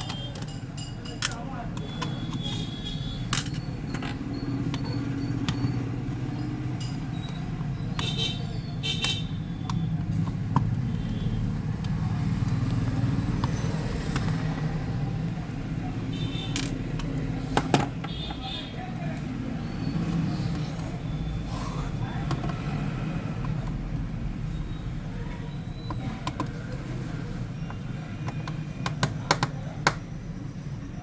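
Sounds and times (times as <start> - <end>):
tools clicking on metal casing: 0.0 - 10.9, 16.2 - 18.4.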